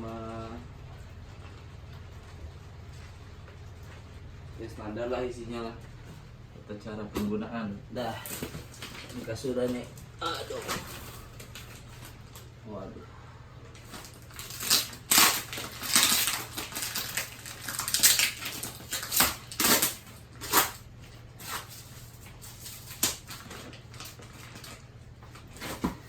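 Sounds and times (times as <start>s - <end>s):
plastic wrapping crinkling: 8.0s - 12.5s, 13.7s - 26.0s.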